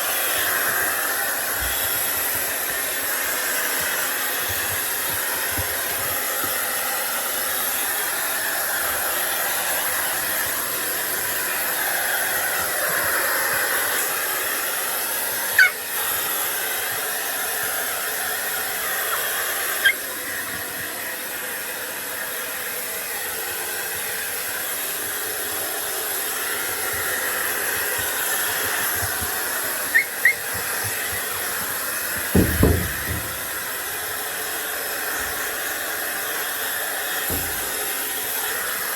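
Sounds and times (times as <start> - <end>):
hair dryer blowing: 0.0 - 38.9
dog yipping: 15.4 - 16.0, 18.9 - 20.2, 28.0 - 32.0.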